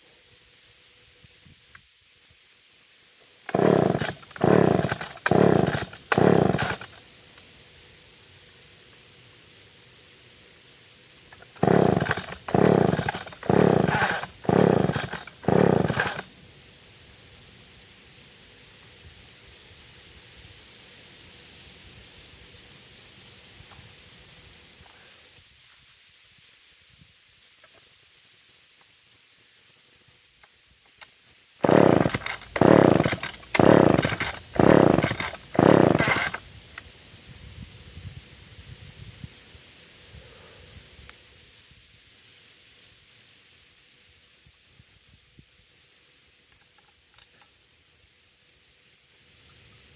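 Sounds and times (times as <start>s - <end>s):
recoil starter cord pulls: 3.5s - 7.0s, 11.4s - 16.3s, 31.6s - 36.4s
chainsaw engine turning over: 3.5s - 7.1s, 11.4s - 16.3s, 31.6s - 36.5s.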